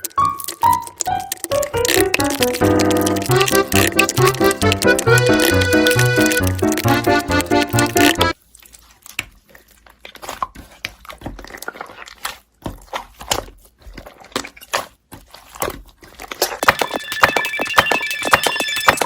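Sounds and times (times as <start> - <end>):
faint music with high tones: 16.6 - 19.0.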